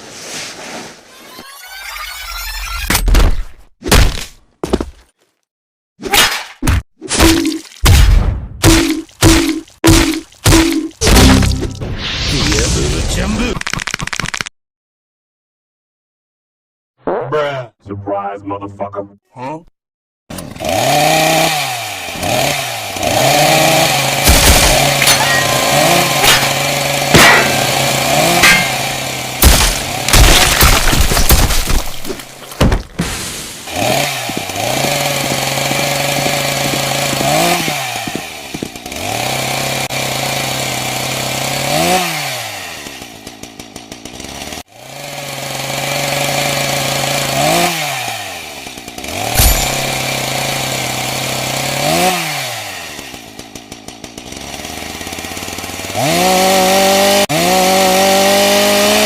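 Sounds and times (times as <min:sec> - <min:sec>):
chainsaw revving: 0:20.3 - 0:30.5, 0:33.6 - 0:59.0
sharp crashing impacts: 0:24.2 - 0:33.8.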